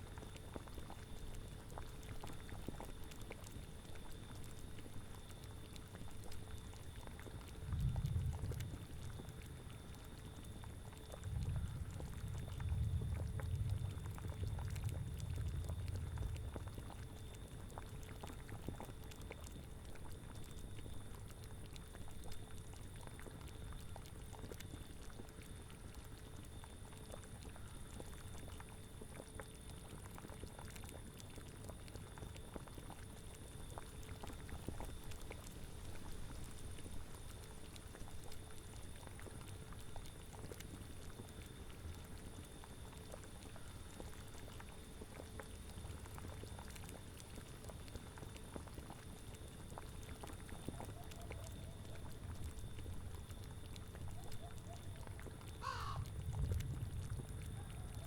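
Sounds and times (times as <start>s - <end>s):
liquid boiling and bubbling: 0.0s - 58.0s
low rumble: 7.6s - 9.2s, 11.2s - 17.2s.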